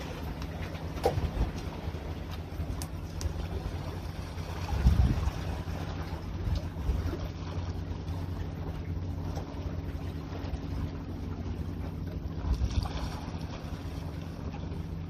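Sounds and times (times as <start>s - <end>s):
wind rumbling on microphone: 0.0s - 8.8s, 12.3s - 15.0s
low engine hum: 0.0s - 15.0s.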